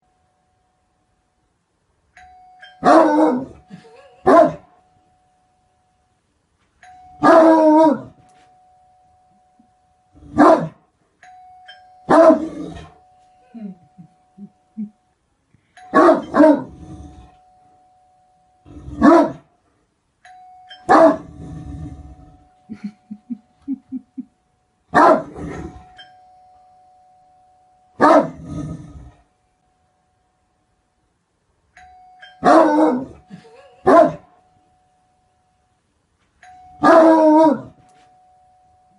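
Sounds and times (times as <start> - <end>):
faint steady tone: 0.0 - 38.9
dog barking deeply: 4.2 - 4.6, 10.4 - 10.8, 19.0 - 19.4, 20.9 - 21.3, 25.0 - 25.6, 28.0 - 28.4, 33.8 - 34.2.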